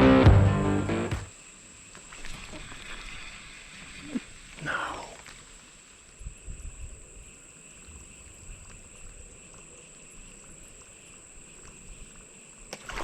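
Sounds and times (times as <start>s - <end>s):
high-pitched whine: 0.0s - 1.3s.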